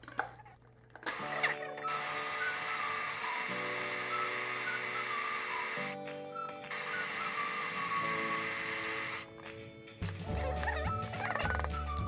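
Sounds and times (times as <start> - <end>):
blender motor running: 1.0 - 9.3
background music: 1.1 - 12.0.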